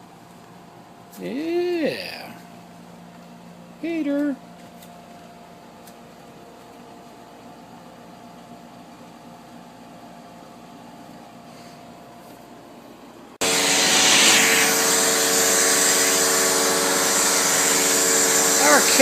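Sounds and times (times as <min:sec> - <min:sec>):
vacuum cleaner running: 0:13.3 - 0:19.0.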